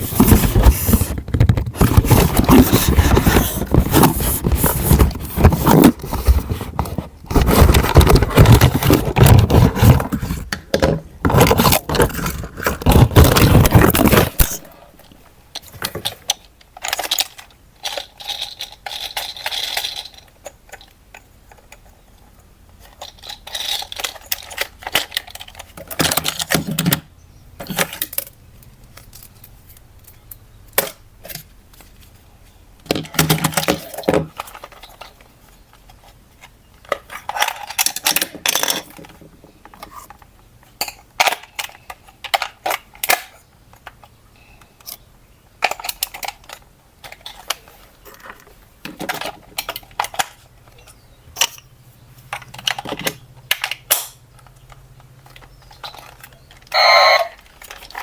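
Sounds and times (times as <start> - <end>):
small hard objects clattering: 0.0 - 21.8, 45.6 - 58.0.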